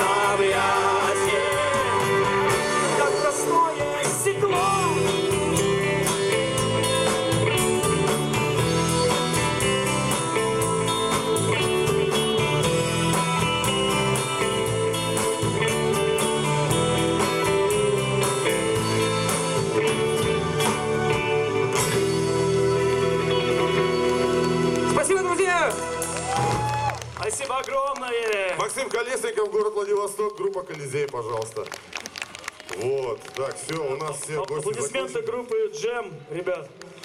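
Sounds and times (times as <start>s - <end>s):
electric guitar: 0.0s - 25.0s
bass guitar: 0.0s - 27.2s
drums: 0.0s - 28.8s.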